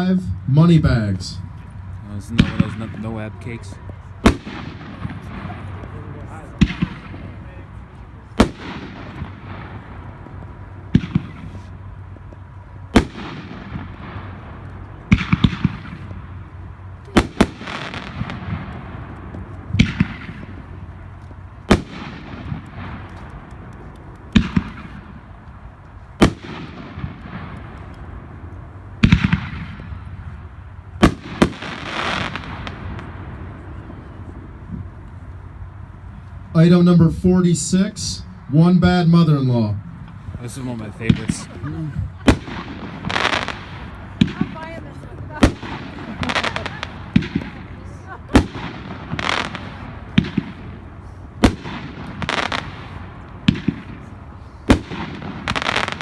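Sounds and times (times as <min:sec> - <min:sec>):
loud firework reports: 0:00.0 - 0:56.0
firework sizzle: 0:12.9 - 0:35.0, 0:40.4 - 0:56.0.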